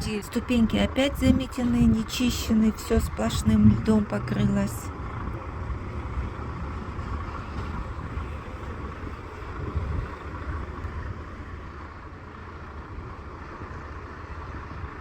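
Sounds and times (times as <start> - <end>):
vehicle passing: 0.0 - 14.2
road traffic rumble: 0.0 - 15.0
wind noise: 6.1 - 11.3.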